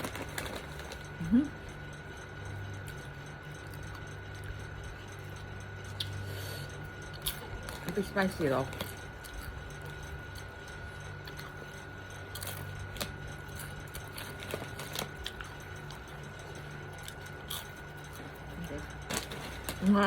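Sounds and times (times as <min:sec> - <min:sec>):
chewing crunchy chips: 0:00.0 - 0:20.0
faint steady hum: 0:00.0 - 0:20.0.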